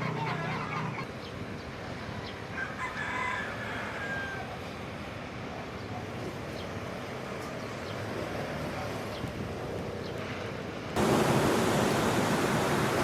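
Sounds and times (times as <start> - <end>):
wind: 0.0 - 13.0
rooster crowing: 2.5 - 4.6
surf: 11.0 - 13.0.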